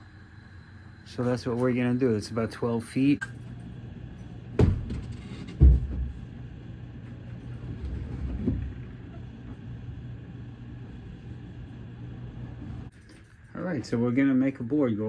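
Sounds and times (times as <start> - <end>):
steady low hum: 0.0 - 15.0
dull knocks and thumps: 4.6 - 6.3.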